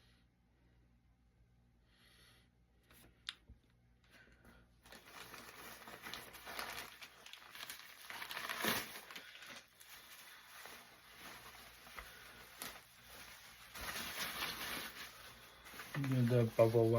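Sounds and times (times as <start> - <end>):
packaging crinkling: 4.8 - 16.9.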